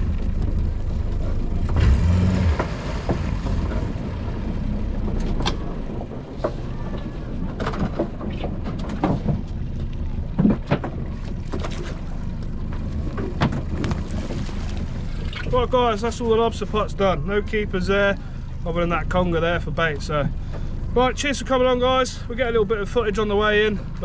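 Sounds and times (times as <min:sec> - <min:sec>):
boat engine running: 0:00.0 - 0:24.0
sharp knocks and clatters: 0:05.1 - 0:09.6.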